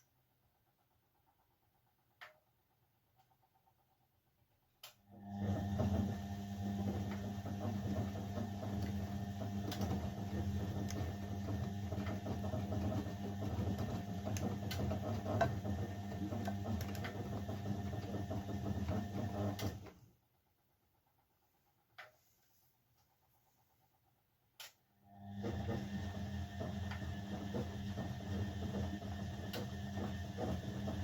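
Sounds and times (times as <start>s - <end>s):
washing machine motor hum: 5.0s - 21.5s, 25.0s - 31.0s.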